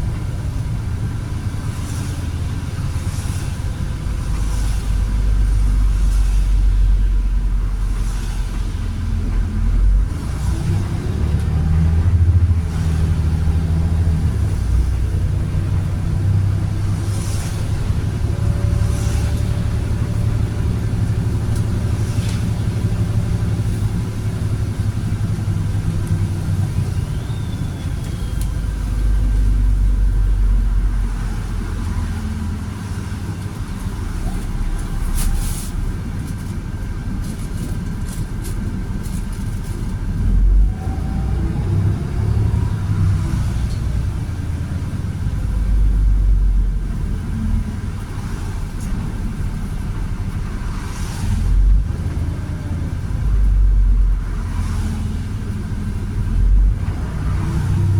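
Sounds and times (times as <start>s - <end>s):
bus diesel engine under load: 0.0s - 57.9s.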